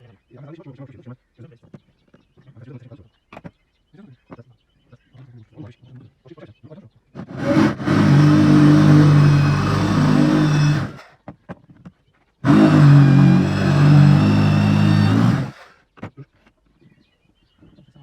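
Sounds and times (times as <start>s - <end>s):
electric motor running: 7.2s - 11.0s, 12.5s - 15.7s.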